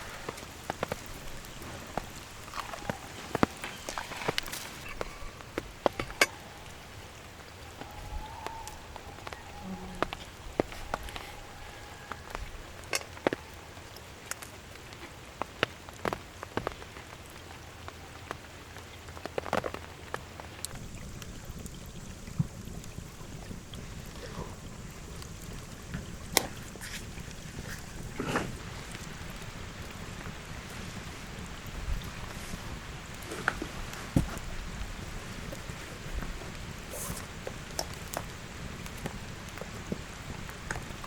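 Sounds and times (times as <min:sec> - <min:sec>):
steady rain falling: 0:00.0 - 0:41.0.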